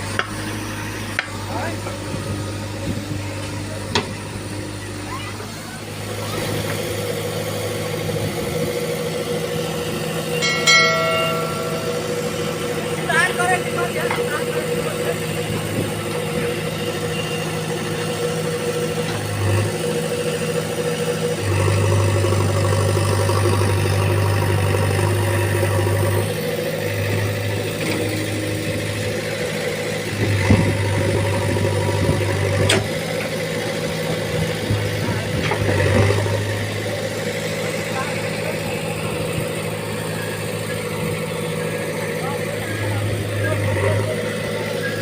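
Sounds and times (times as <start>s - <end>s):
diesel engine running: 0.0s - 45.0s.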